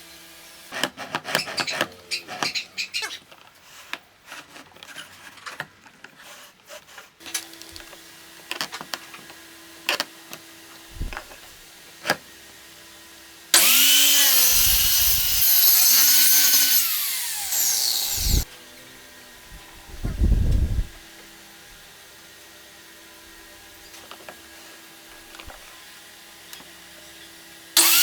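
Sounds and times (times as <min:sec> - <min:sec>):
miter saw cutting wood: 0:13.5 - 0:19.6, 0:27.8 - 0:28.0.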